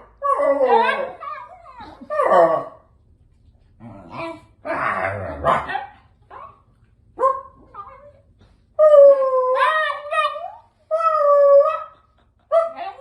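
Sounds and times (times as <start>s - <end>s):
dog barking: 7.2s - 7.6s.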